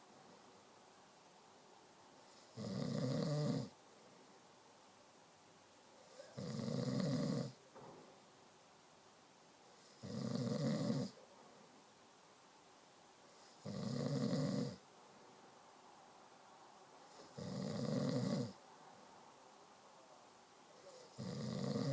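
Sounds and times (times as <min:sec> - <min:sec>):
person snoring: 0:02.6 - 0:03.7, 0:06.1 - 0:07.6, 0:10.0 - 0:11.2, 0:13.6 - 0:14.8, 0:17.2 - 0:18.6, 0:20.8 - 0:21.9.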